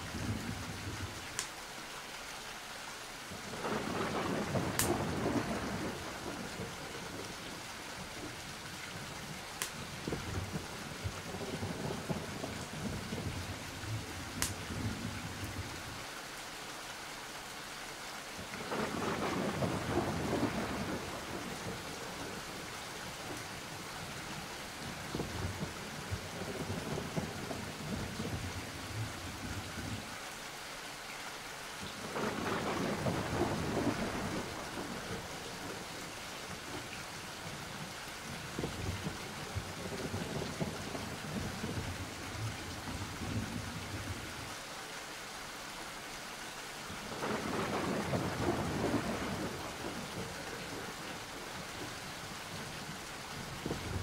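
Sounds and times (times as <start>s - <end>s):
steady rain: 0.0s - 54.0s
thunder rumbling: 3.5s - 7.6s, 9.7s - 15.7s, 18.6s - 23.4s, 24.8s - 30.1s, 32.0s - 36.9s, 38.5s - 44.3s, 47.0s - 54.0s.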